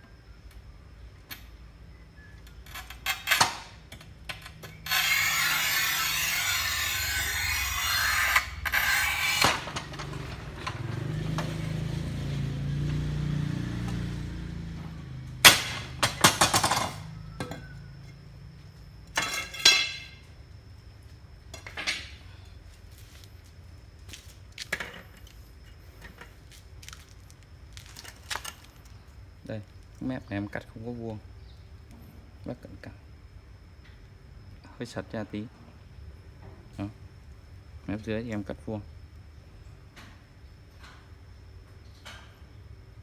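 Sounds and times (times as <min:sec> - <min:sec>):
electric tile cutter cutting tile: 0:04.5 - 0:11.6.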